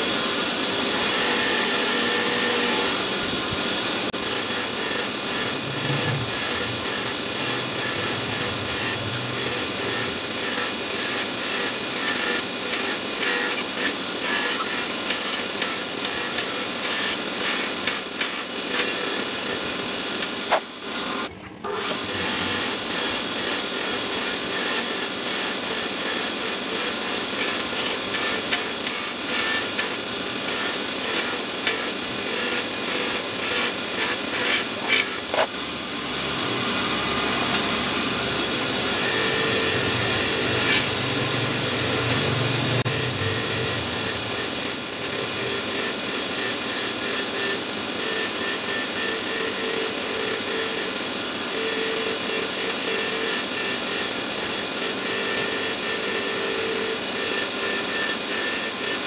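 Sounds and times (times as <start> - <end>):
abrasive scraping of metal parts: 4.2 - 10.6, 34.0 - 35.5, 38.9 - 44.3.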